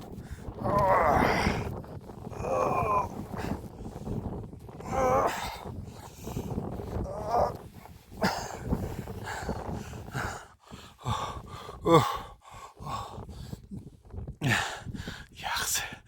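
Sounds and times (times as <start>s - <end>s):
person groaning: 0.6s - 1.6s, 2.3s - 3.5s, 4.8s - 5.5s, 7.0s - 7.6s, 11.8s - 12.3s
person breathing hard: 8.1s - 15.3s.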